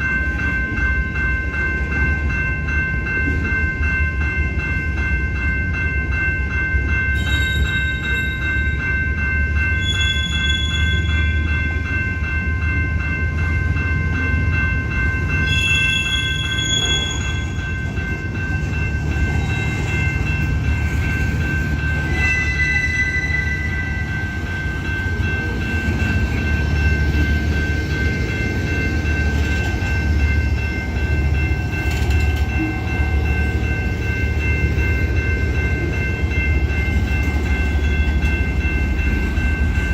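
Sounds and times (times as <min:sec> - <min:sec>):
freight train rumbling: 0:00.0 - 0:39.9
high-pitched ringing tones: 0:00.0 - 0:39.9.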